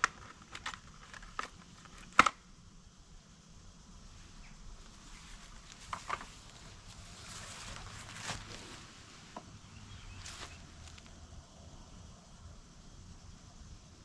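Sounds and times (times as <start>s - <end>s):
small hard parts clicking: 0.0s - 2.4s
faint outdoor background: 0.0s - 14.0s.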